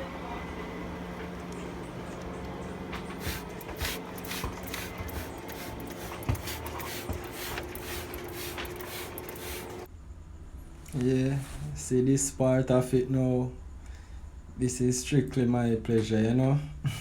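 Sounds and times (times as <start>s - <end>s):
scrubbing and rubbing: 3.1s - 9.9s.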